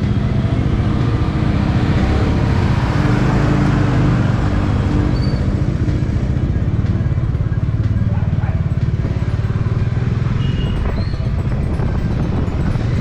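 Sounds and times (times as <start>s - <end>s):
motorcycle engine running: 0.0s - 13.0s
wind noise on microphone: 7.1s - 13.0s.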